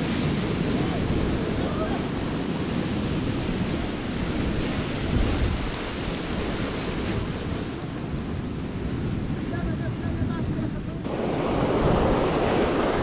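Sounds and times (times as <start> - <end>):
sea surf washing: 0.0 - 13.0
wind buffeting microphone: 0.0 - 13.0.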